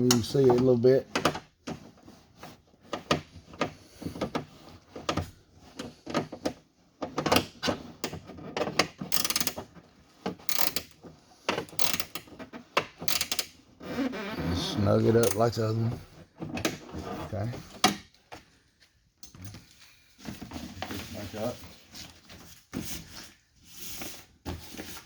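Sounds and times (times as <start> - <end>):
ratchet wrench clicking: 9.1 - 9.5, 10.5 - 10.9, 11.8 - 12.2, 13.1 - 13.5.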